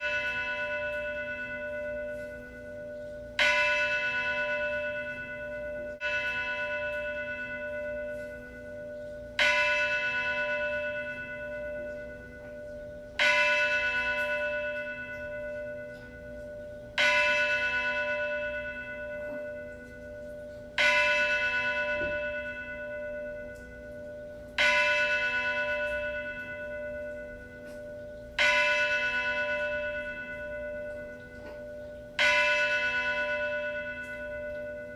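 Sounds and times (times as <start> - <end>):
church bell tolling: 0.0 - 34.9.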